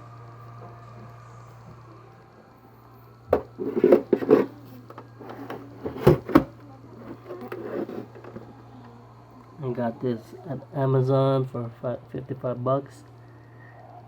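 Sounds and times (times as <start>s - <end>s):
faint low hum: 0.0s - 14.0s
rubbing and scraping: 3.4s - 4.6s, 5.2s - 8.5s.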